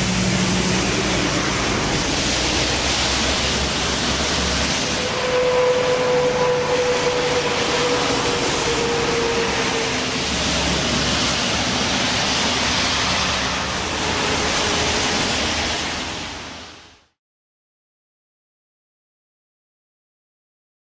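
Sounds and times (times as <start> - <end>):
vehicle passing by: 0.0 - 16.6
motorway traffic rushing: 0.0 - 17.2.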